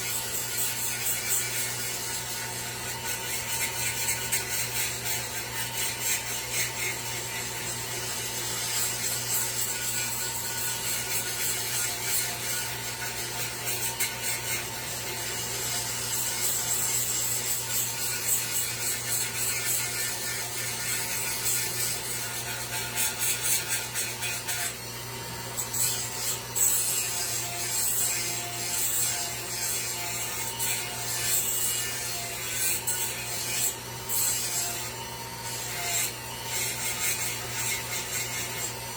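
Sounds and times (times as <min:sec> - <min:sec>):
hand tool scraping wood: 0:00.0 - 0:07.6, 0:16.2 - 0:24.8.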